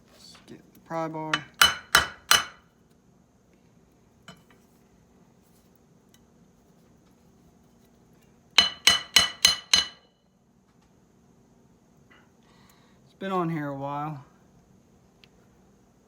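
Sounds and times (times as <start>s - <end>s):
metal-on-metal strikes clanging: 8.6s - 10.1s.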